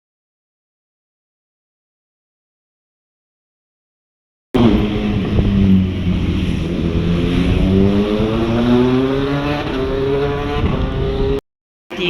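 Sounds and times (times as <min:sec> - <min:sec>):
engine revving up: 0:04.6 - 0:11.4.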